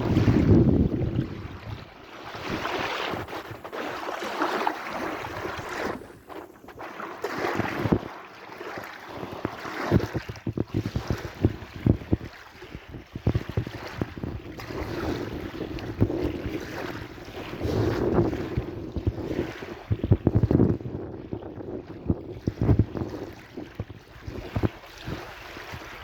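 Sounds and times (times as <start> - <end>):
wind buffeting microphone: 0.0 - 4.0, 4.6 - 8.2, 9.1 - 26.0
sea waves washing in: 0.0 - 20.6.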